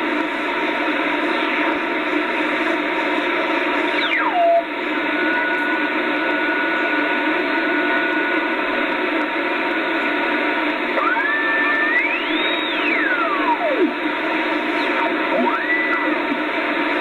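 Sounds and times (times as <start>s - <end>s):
radio hiss and band noise: 0.0s - 17.0s
steady carrier whistle tone: 11.0s - 13.9s.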